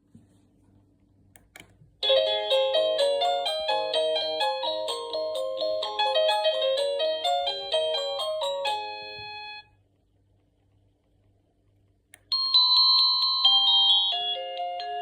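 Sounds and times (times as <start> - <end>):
click: 1.3 - 1.8, 10.6 - 12.3
electronic doorbell chime tune: 2.0 - 9.7, 12.3 - 15.0.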